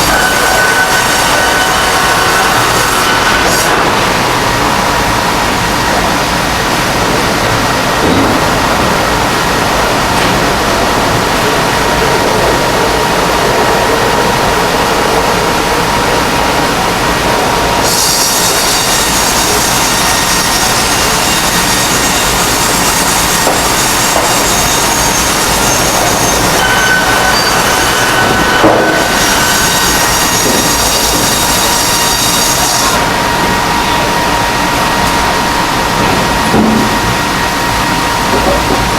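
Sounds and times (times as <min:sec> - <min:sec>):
bandsaw mill sawing wood: 0:00.0 - 0:09.5, 0:17.8 - 0:35.2.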